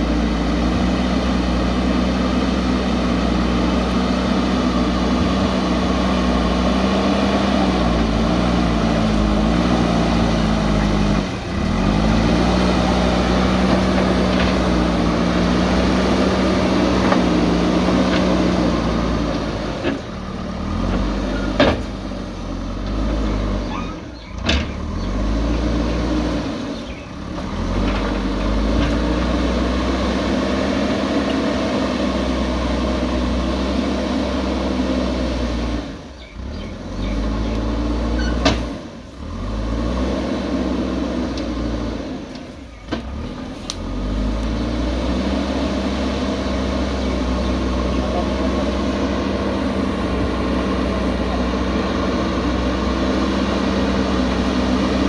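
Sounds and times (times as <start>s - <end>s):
diesel engine revving: 0.0s - 55.0s.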